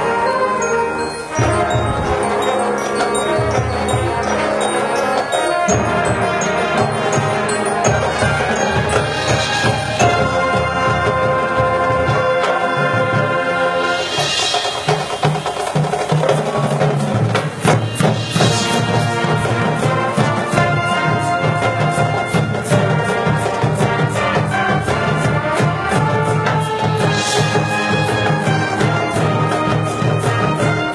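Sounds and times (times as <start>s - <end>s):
marching band playing: 0.0s - 30.9s
driving drum beat: 1.3s - 30.9s
cymbal crashes: 8.2s - 10.5s, 13.6s - 19.8s, 27.0s - 28.9s.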